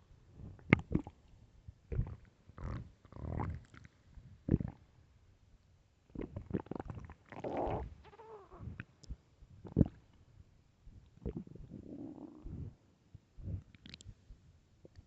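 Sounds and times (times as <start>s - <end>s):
stomach growling: 0.6s - 1.2s, 1.9s - 3.9s, 4.5s - 4.8s, 6.1s - 8.9s, 9.7s - 10.0s, 11.2s - 12.8s.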